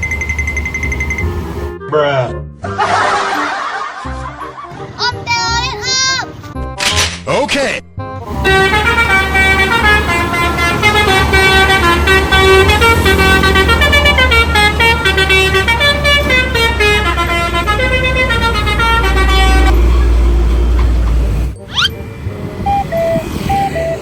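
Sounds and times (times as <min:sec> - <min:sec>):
bus engine rumble: 0:00.0 - 0:01.8, 0:08.2 - 0:24.0
multi-tone bus horn melody: 0:08.0 - 0:20.7, 0:21.9 - 0:24.0.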